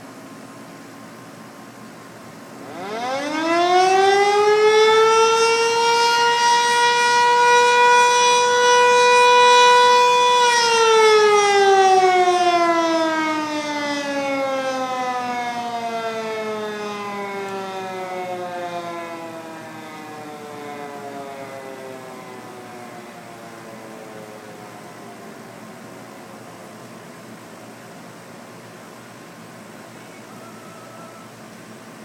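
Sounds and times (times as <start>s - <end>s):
outdoor warning siren wailing: 2.4s - 27.7s, 29.5s - 31.6s.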